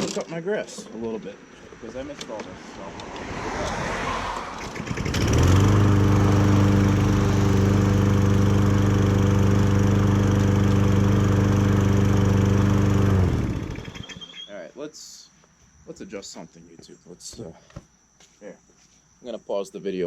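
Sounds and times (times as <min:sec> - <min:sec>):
lawn mower engine running: 0:04.6 - 0:14.3.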